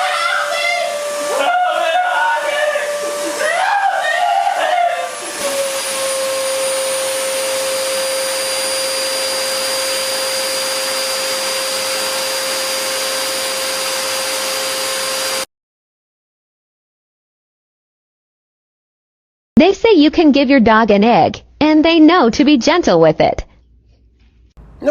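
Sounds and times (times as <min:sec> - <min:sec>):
small electric motor whining: 0:00.0 - 0:15.5.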